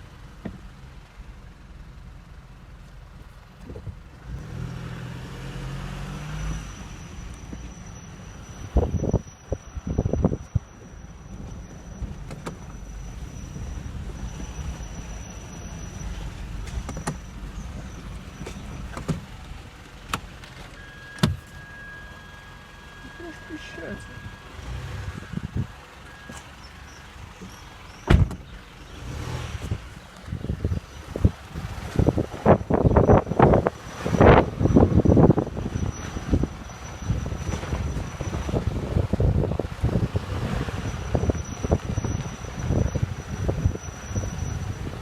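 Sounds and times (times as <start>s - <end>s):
car engine hum: 0.0s - 45.0s
low road rumble: 0.0s - 45.0s
car creaks and clicks: 8.8s - 21.7s, 27.4s - 28.6s.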